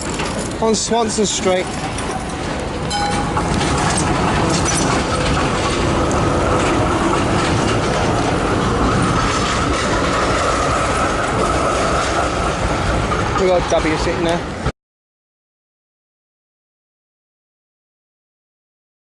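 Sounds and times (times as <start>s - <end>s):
tram wheels rumbling on rails: 0.0s - 14.7s.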